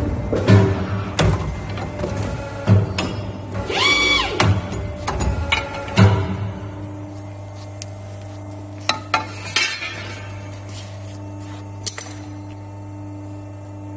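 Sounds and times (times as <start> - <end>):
pipe bending machine humming: 0.0 - 13.9.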